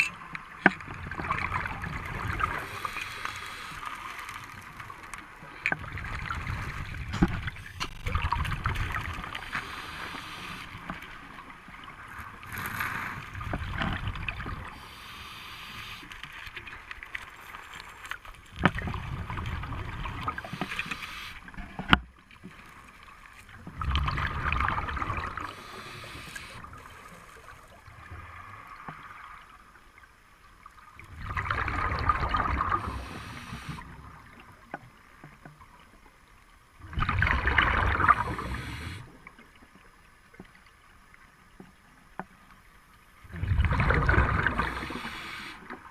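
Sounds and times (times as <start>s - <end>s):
underwater noise: 0.0s - 45.9s
diver's breath bubbling underwater: 31.2s - 33.9s, 36.8s - 39.1s, 43.3s - 45.7s.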